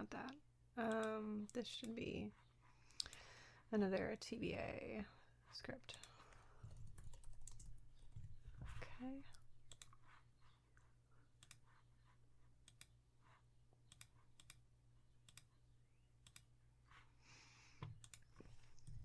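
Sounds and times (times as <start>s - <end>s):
computer mouse clicks: 0.9s - 2.0s, 5.8s - 7.7s, 9.3s - 10.2s, 11.4s - 11.7s, 12.6s - 13.0s, 13.8s - 14.6s, 15.2s - 15.5s, 16.2s - 16.5s, 17.8s - 19.0s.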